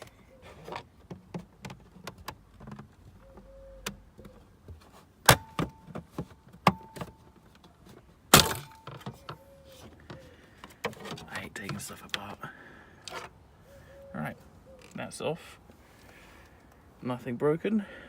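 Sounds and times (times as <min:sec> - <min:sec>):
plastic panel clicks and scrapes: 0:05.3 - 0:12.3.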